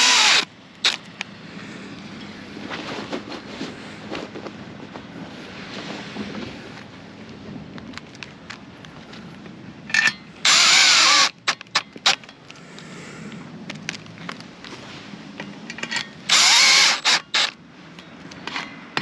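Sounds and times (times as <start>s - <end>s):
power drill driving screws: 0.0s - 0.5s, 10.4s - 11.4s, 16.3s - 17.6s.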